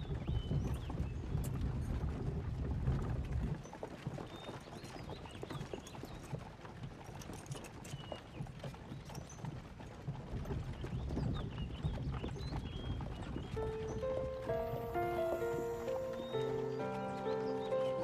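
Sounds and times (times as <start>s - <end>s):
horse hooves clip-clopping: 0.0s - 18.0s.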